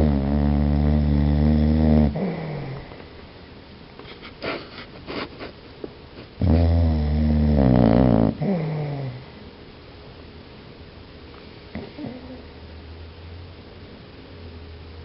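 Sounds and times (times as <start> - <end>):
dog snoring: 0.0 - 3.0, 6.4 - 9.2, 11.7 - 12.5.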